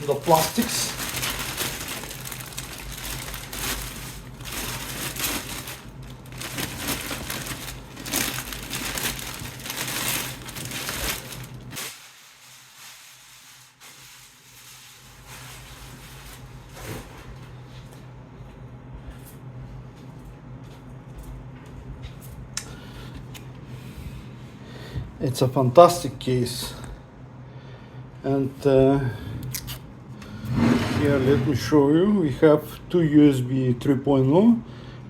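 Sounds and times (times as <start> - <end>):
plastic film crackling: 0.0 - 16.8.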